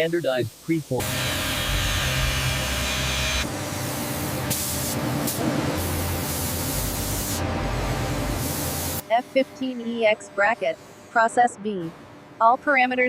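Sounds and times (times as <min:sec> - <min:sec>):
high-pressure water jet hiss: 0:00.0 - 0:09.1
low hum: 0:05.2 - 0:09.0.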